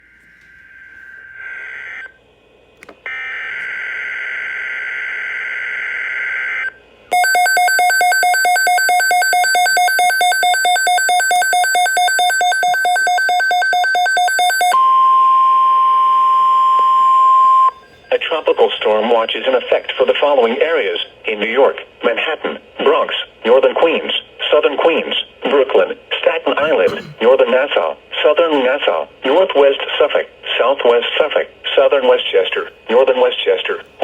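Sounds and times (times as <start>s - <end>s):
rapidly pulsing alarm beep: 7.1s - 20.4s
steady warning alarm tone: 7.1s - 20.5s.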